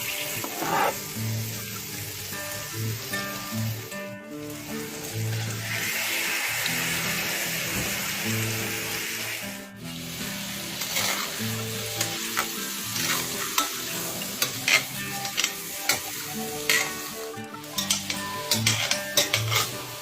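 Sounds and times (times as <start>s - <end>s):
food sizzling in a pan: 0.0s - 20.0s
quiet background music: 0.0s - 20.0s
utensil scraping a pan: 0.3s - 1.1s, 10.8s - 17.0s, 17.8s - 19.9s.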